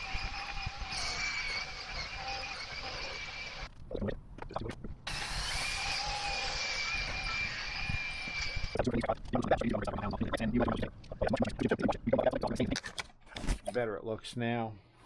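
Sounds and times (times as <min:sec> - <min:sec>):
drill spinning buffing wheel: 0:00.0 - 0:03.7, 0:05.1 - 0:08.8.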